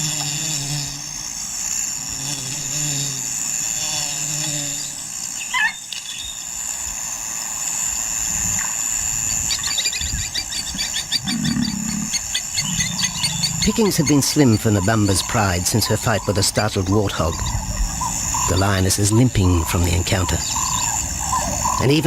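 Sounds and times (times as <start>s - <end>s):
high insect drone: 0.0s - 22.0s
rapid chirping trill: 9.2s - 22.0s.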